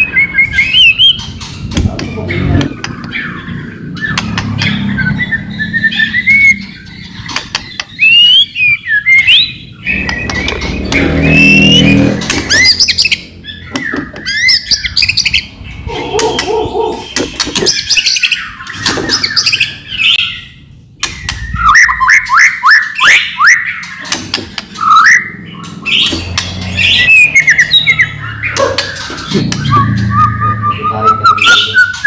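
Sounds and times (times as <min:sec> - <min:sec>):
bird singing whistled phrases: 0:08.0 - 0:10.5, 0:11.2 - 0:13.0, 0:21.4 - 0:23.7, 0:29.5 - 0:32.0.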